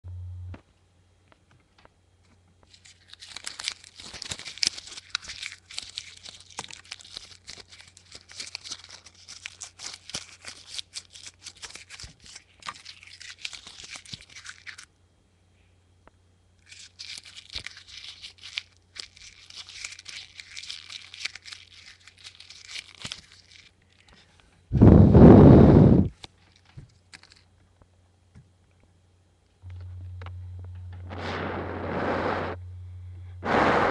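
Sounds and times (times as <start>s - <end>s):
low electrical hum: 0.0s - 33.9s
crackling and rustling: 1.3s - 14.9s, 16.6s - 27.9s
loud full-range blast: 31.0s - 32.6s, 33.3s - 33.9s.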